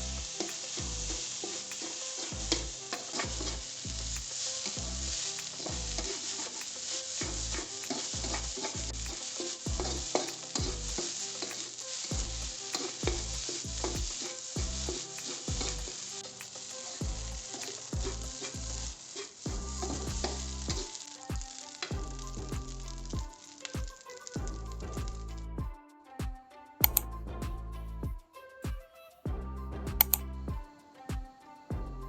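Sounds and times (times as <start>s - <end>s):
rice sizzling in a pan: 0.0s - 24.4s
spatula scraping a pan: 0.2s - 21.9s.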